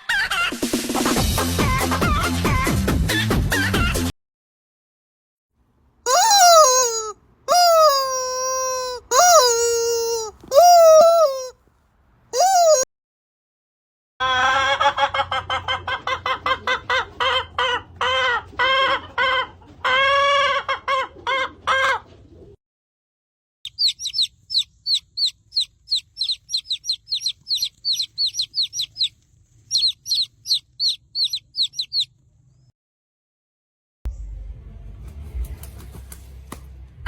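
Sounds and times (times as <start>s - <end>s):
hen clucking: 6.1s - 11.5s, 12.4s - 12.8s, 14.2s - 22.5s, 23.7s - 32.1s
chicks peeping: 23.7s - 32.2s.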